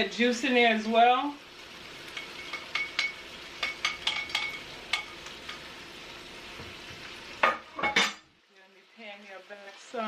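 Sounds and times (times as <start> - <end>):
food sizzling in a pot: 0.0 - 10.0
utensil clinking against pot: 2.1 - 5.7.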